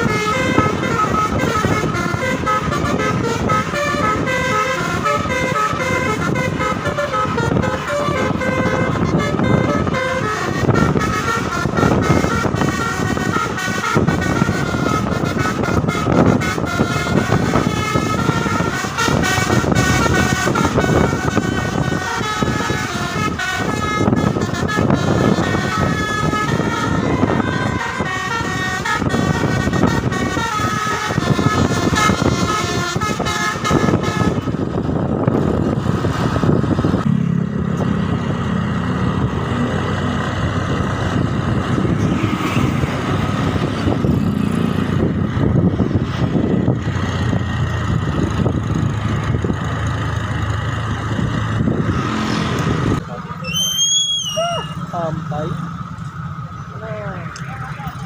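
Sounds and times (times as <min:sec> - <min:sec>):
musical air horn melody: 0:00.0 - 0:34.6
bus engine drone: 0:00.0 - 0:58.0.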